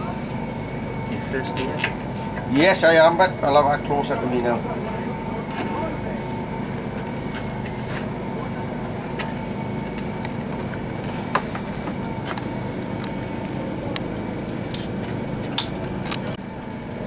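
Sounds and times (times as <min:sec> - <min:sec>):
machine hum: 0:00.0 - 0:17.0.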